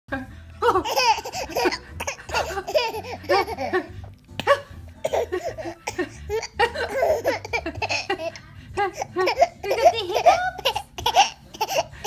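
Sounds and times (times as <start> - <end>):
hiccups: 4.4 - 5.2.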